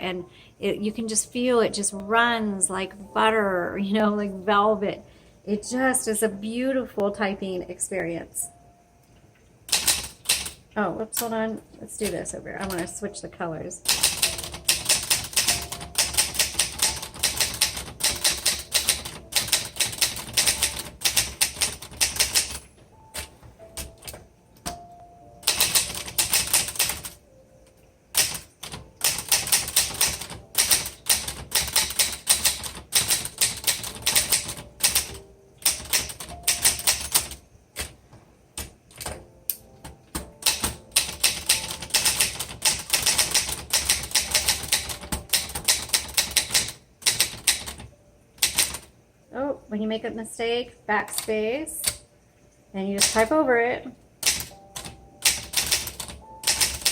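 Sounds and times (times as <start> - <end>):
manual typewriter keystrokes: 9.7 - 11.4, 12.0 - 12.9, 13.8 - 27.2, 28.1 - 38.0, 38.6 - 48.9, 51.1 - 52.0, 53.0 - 53.4, 54.2 - 56.9.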